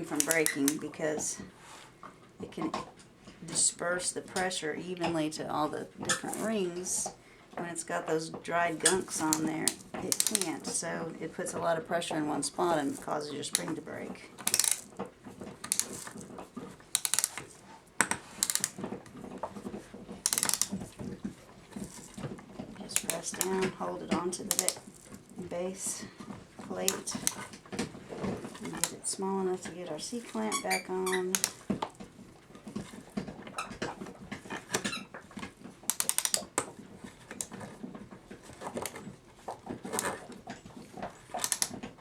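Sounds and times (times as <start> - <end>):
sharp metallic clicks: 0.0 - 0.9, 8.8 - 10.9, 12.5 - 15.0, 15.6 - 16.2, 16.9 - 18.9, 20.2 - 20.9, 22.9 - 25.1, 26.6 - 27.5, 30.0 - 31.8, 35.9 - 36.7, 41.3 - 41.8
clock mainspring ratchet clicking: 0.1 - 0.8, 9.1 - 10.6, 14.4 - 14.9, 15.7 - 16.2, 16.9 - 17.4, 18.4 - 18.8, 20.3 - 20.8, 24.5 - 24.8, 31.3 - 31.6, 35.9 - 36.4, 41.4 - 41.7
clock spring squeaking: 0.1 - 0.8, 8.8 - 10.7, 20.3 - 20.8.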